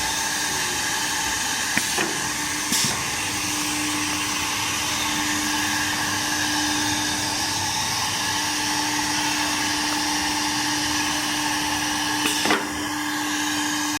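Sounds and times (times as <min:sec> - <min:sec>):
drilling machine whine: 0:00.0 - 0:14.0.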